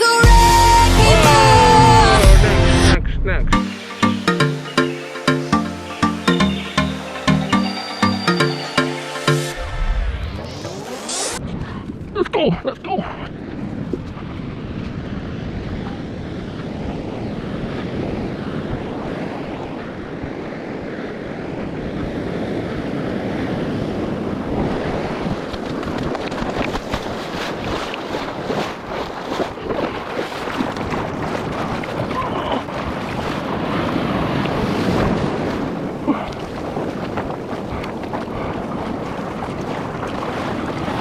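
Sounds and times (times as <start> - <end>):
ocean surf washing: 3.6 - 11.4, 27.1 - 41.0
wind buffeting microphone: 24.0 - 41.0
sharp water splashes: 25.8 - 35.8, 36.4 - 41.0.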